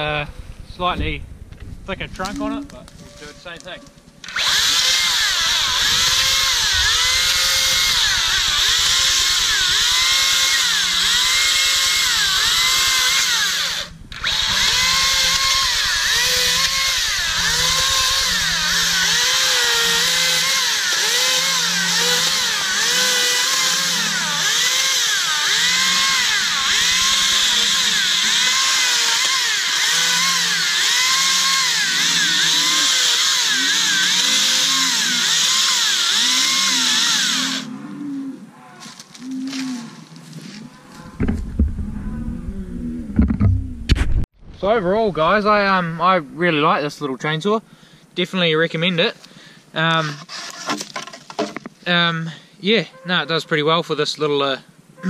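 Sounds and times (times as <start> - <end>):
electric chainsaw cutting branch: 4.2 - 37.7, 49.8 - 51.6.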